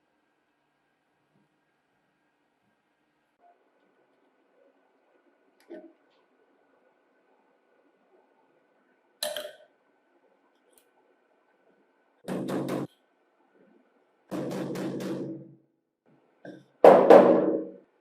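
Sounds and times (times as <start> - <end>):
quick repeated knocks or rattles: 12.3 - 12.9.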